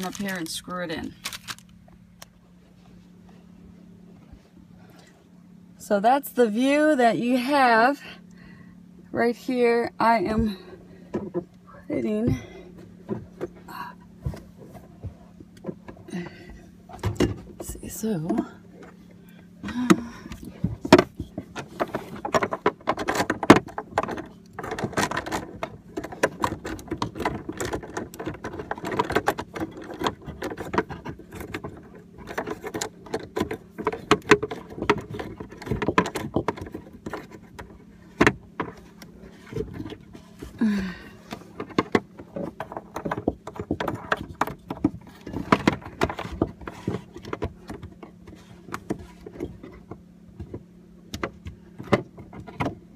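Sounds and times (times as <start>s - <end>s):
steady low hum: 0.0s - 52.9s
knocks and scrapes: 19.6s - 52.9s.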